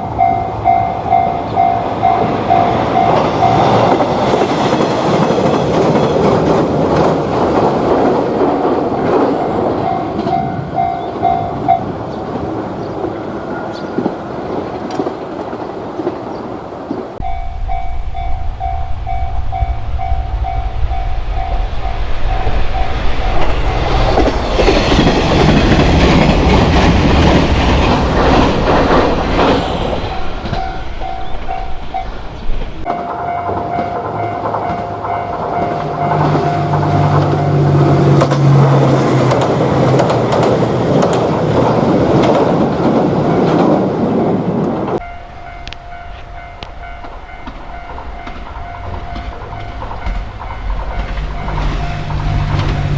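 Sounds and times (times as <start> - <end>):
level-crossing alarm bell: 0.0 - 6.6, 17.2 - 38.9, 45.0 - 52.9
train passing with rail noise: 0.0 - 52.9
train rumbling over crossing: 0.0 - 52.9.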